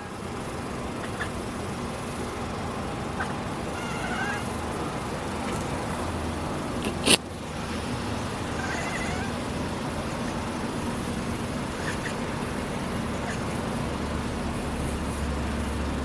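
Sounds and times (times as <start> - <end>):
steady background noise: 0.0 - 16.0
cat chirping: 1.0 - 2.2, 3.0 - 5.2, 6.8 - 7.2, 8.4 - 13.9.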